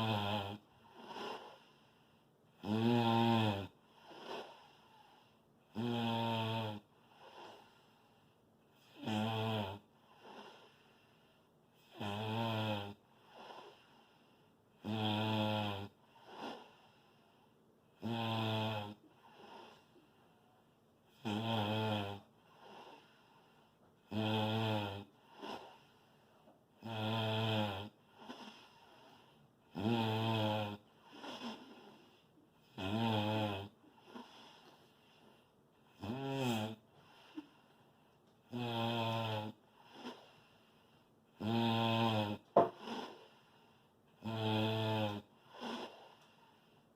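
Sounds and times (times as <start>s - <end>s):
person snoring loudly: 0.0s - 1.7s, 2.6s - 4.8s, 5.7s - 7.7s, 8.8s - 10.6s, 11.8s - 13.8s, 14.8s - 16.8s, 18.0s - 19.8s, 21.1s - 23.2s, 24.0s - 25.8s, 26.8s - 28.7s, 29.7s - 34.5s, 35.9s - 37.5s, 38.5s - 40.3s, 41.4s - 43.4s, 44.2s - 46.2s.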